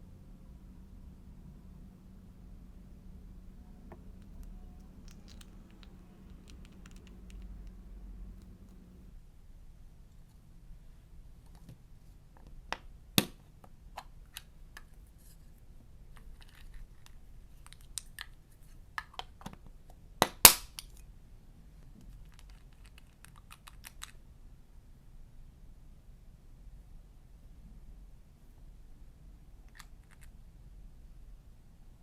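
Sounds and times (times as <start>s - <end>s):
makeup containers clicking and tapping: 5.1s - 7.8s.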